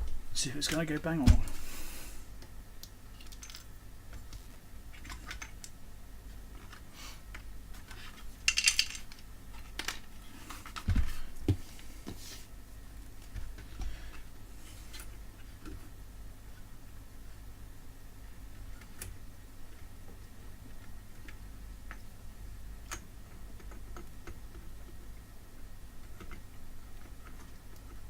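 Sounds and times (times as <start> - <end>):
metal parts and tools clinking: 8.5 - 9.1.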